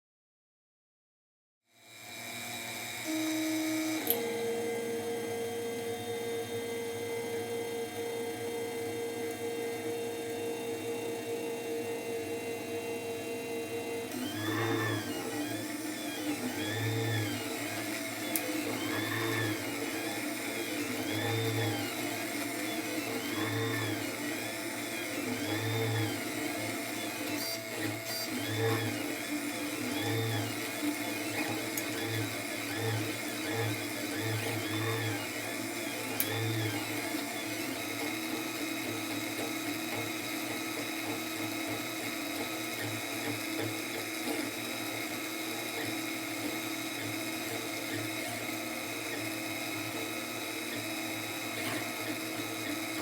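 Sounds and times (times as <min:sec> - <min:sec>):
stepper motors whining: 0:11.8 - 0:53.0.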